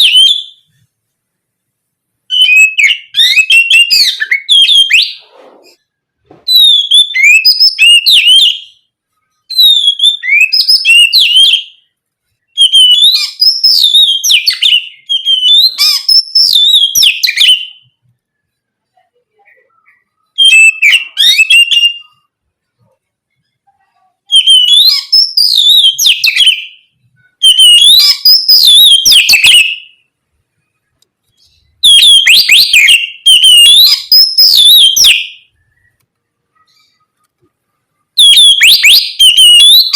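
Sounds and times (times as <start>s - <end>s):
bird singing whistled phrases: 0.0s - 0.7s, 2.3s - 5.3s, 6.5s - 8.9s, 9.5s - 11.8s, 12.6s - 18.0s, 19.6s - 22.3s, 24.3s - 30.1s, 31.4s - 36.0s, 38.2s - 39.9s.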